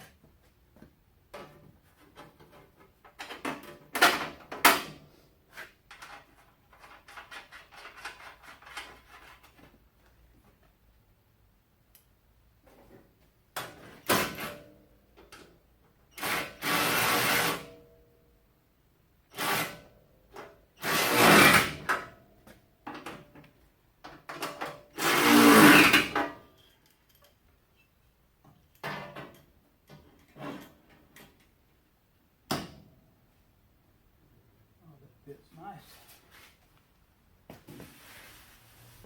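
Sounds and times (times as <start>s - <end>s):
power drill driving bolts: 16.1s - 17.7s.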